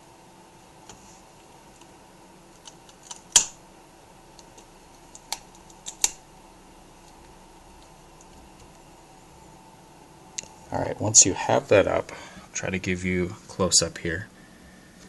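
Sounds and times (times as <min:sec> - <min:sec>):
fingers clicking and tapping on laptop: 0:04.4 - 0:06.2.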